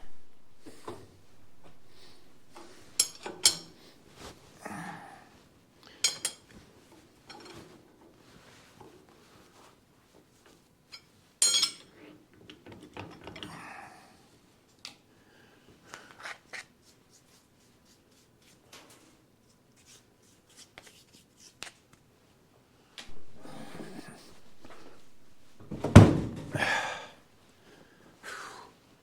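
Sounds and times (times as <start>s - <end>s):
metal scraping: 0.0s - 4.4s, 23.1s - 26.7s
metal tools clattering on workbench: 1.6s - 4.0s, 6.1s - 6.4s, 7.3s - 7.7s, 11.0s - 11.9s.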